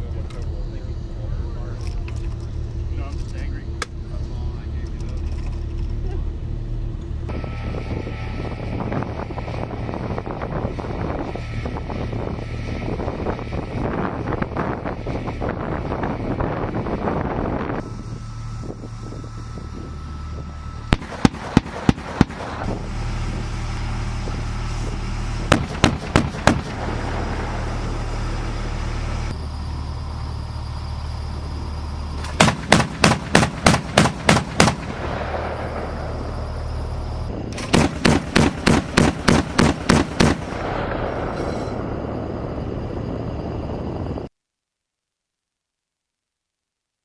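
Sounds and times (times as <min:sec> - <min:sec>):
vehicle engine humming: 0:00.0 - 0:44.3
automatic gunfire bursts: 0:32.4 - 0:34.9, 0:37.7 - 0:40.5.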